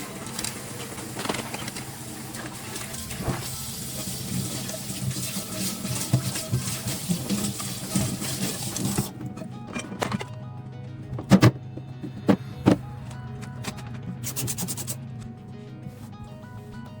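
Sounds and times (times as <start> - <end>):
tap running into sink: 0.3 - 9.1.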